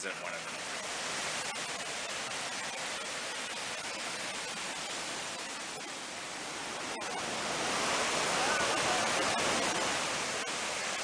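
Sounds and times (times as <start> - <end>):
steady rain: 0.0 - 11.0.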